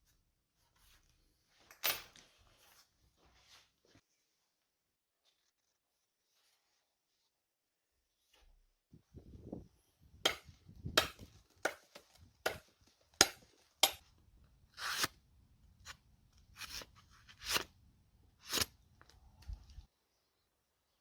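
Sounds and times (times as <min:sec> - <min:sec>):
knife chopping: 0:10.3 - 0:14.0.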